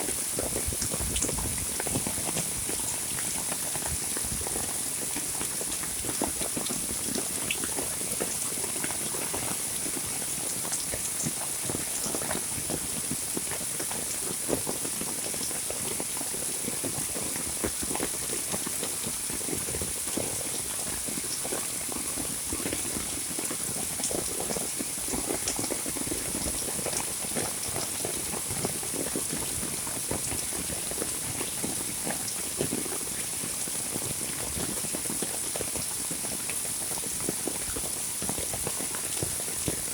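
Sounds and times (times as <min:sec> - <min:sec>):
heavy rain falling: 0:16.2 - 0:39.9.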